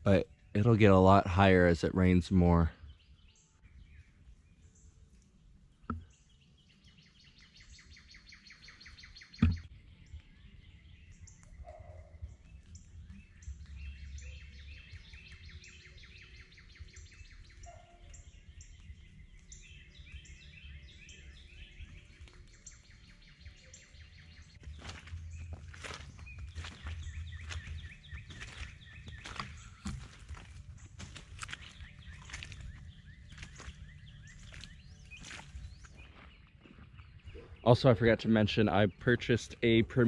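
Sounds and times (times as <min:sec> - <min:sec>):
birds chirping and trilling: 0:00.0 - 0:40.0
sharp knocks: 0:09.4 - 0:09.7.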